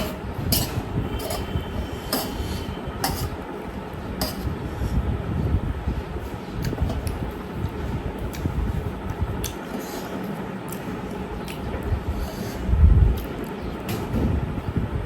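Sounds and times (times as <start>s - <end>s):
cutlery clinking on dishes: 0.0s - 1.5s, 2.1s - 3.4s.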